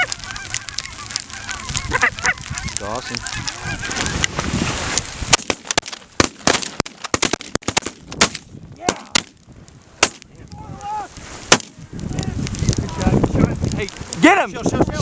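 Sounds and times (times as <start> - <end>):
geese honking: 0.0 - 4.4
shotgun shots: 5.3 - 9.3.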